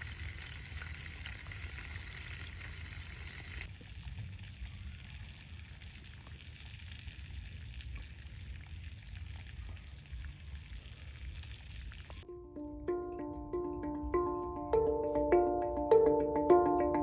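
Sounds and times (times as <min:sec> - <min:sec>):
food sizzling in hot oil: 0:00.0 - 0:12.2
faint crackles: 0:00.0 - 0:12.3.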